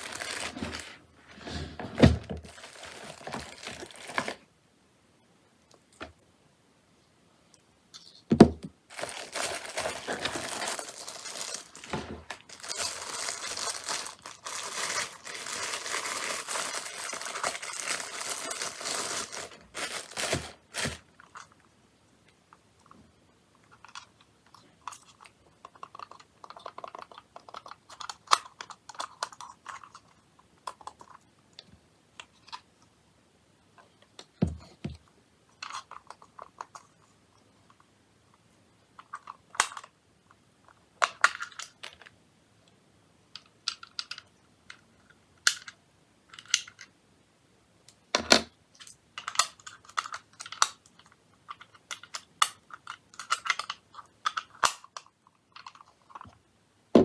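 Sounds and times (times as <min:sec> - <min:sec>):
packaging tearing and crinkling: 0:00.0 - 0:01.0, 0:02.4 - 0:04.4, 0:08.9 - 0:21.0.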